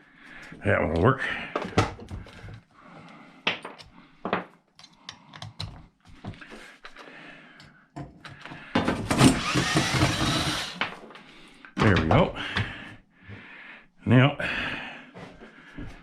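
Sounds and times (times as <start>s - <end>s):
cordless driver running: 9.2s - 10.8s.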